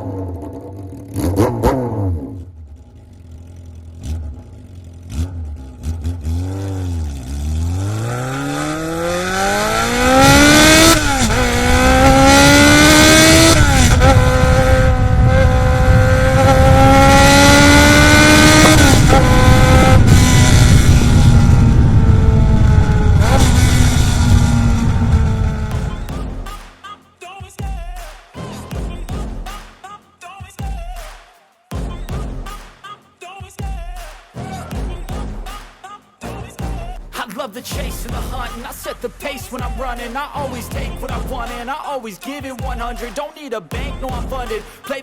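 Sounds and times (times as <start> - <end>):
motorcycle engine accelerating: 0.0 - 26.5.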